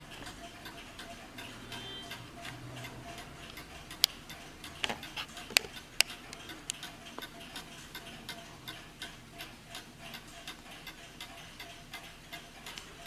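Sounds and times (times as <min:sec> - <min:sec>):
clock ticking: 0:00.0 - 0:13.0
sharp clicks: 0:00.2 - 0:08.8.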